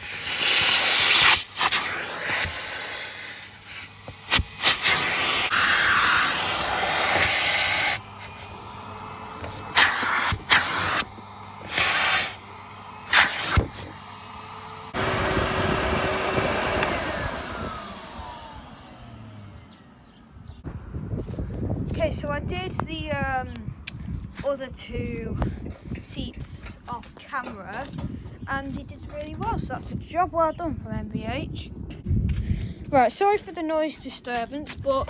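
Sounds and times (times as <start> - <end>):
vacuum cleaner suction: 0.0 - 20.2.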